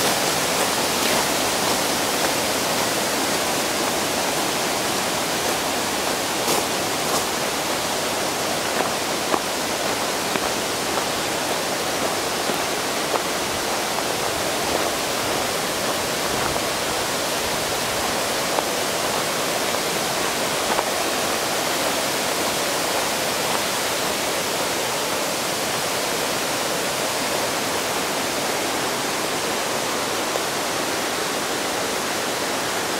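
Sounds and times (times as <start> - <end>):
water splashes: 0.0 - 28.4
rushing stream water: 0.0 - 32.9.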